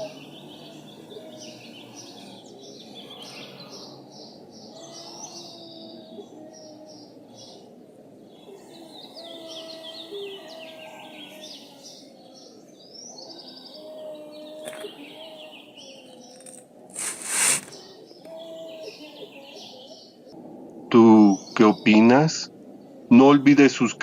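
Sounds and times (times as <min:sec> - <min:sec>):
birds chirping and trilling: 0:00.0 - 0:24.0
short loud rush of noise: 0:16.9 - 0:17.8.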